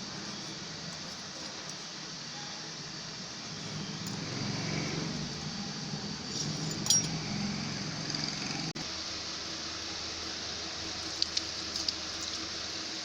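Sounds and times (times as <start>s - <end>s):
steady low hum: 0.0s - 13.0s
light metallic clinks: 6.2s - 7.6s.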